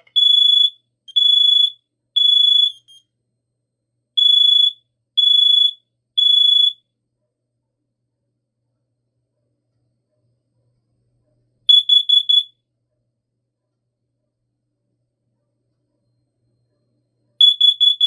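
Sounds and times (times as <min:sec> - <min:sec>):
high-pitched alarm beeps: 0:00.0 - 0:03.0, 0:04.2 - 0:06.7, 0:11.7 - 0:12.5, 0:17.4 - 0:18.0.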